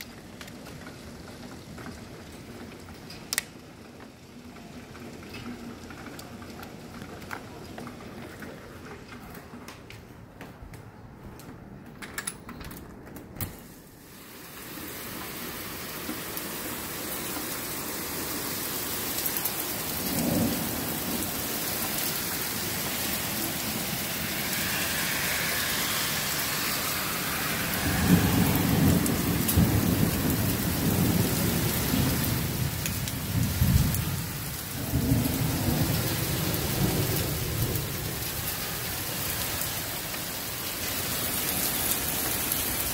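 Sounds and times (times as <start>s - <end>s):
hailstones knocking: 0.0s - 9.4s
hail and rain pelting: 0.0s - 10.0s, 13.6s - 42.9s
low rumbling: 20.5s - 31.2s.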